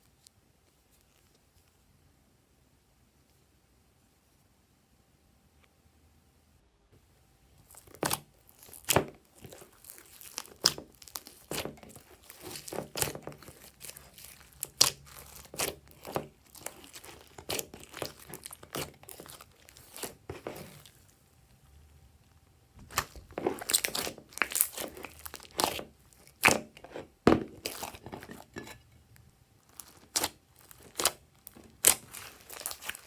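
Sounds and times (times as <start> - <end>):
sticky slime crackling: 7.6 - 28.9, 29.6 - 33.0.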